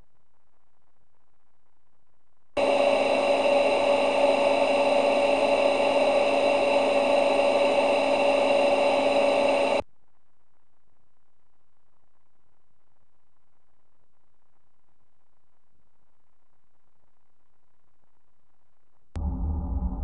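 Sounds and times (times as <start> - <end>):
synthesized launch roar: 19.2 - 20.0.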